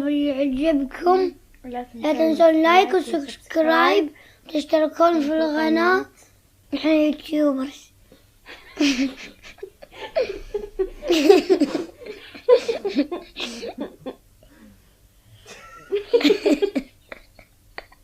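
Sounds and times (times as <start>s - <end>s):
children laughing: 8.5s - 14.2s, 15.5s - 18.0s.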